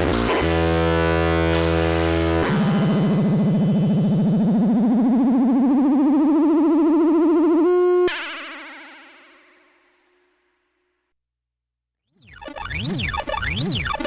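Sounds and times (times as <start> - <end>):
warbling synthesizer tone: 12.2 - 14.0.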